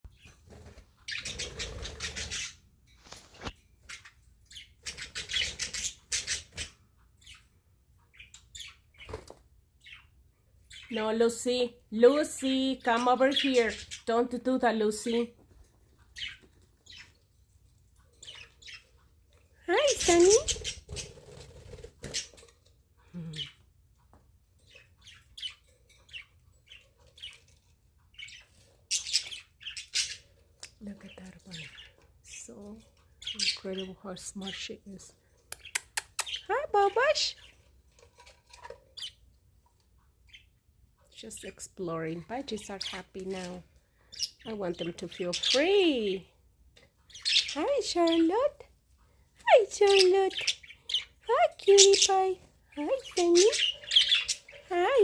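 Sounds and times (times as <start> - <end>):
budgerigars chattering and chirping: 0.2 - 2.6, 3.9 - 7.4, 16.1 - 17.1, 19.7 - 22.4, 24.7 - 27.5, 28.1 - 32.0, 32.6 - 34.8, 42.4 - 46.3, 47.1 - 48.6, 49.5 - 55.0.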